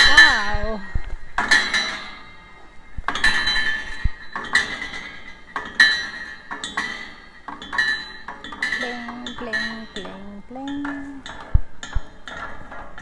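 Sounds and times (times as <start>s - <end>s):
metal strikes ringing: 3.1s - 12.5s.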